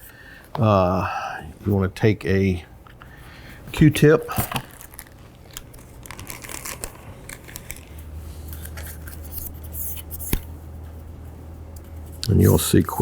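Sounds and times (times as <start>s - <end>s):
cotton swab scratching metal: 6.0s - 10.5s.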